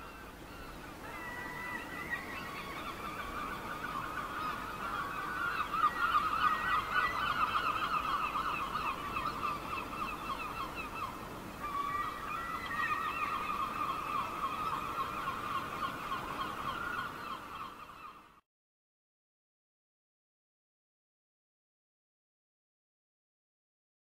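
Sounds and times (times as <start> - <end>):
faint ocean surf: 0.0 - 18.4
seagulls calling: 0.0 - 18.4.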